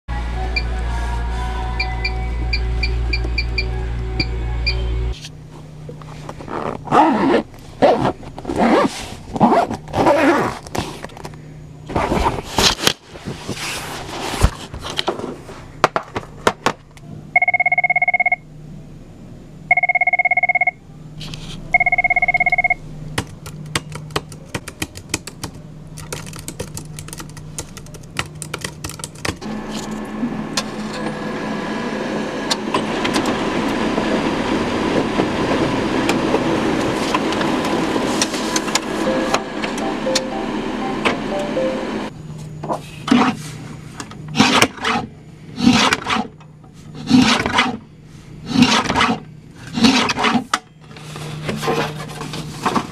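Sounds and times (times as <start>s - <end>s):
steady machine hum: 0.1s - 24.6s, 25.2s - 44.4s
telephone ringing: 17.4s - 18.4s, 19.7s - 20.8s, 21.7s - 22.8s, 39.0s - 42.1s.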